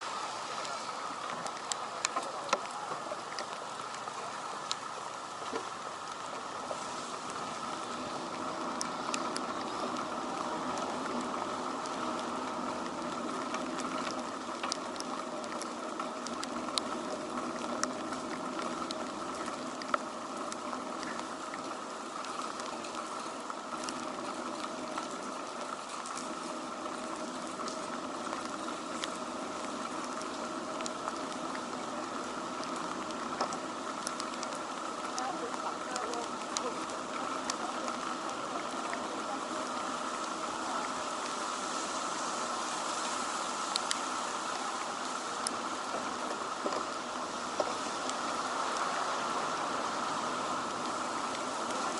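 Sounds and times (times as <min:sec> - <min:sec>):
rain pattering: 0:00.0 - 0:51.9.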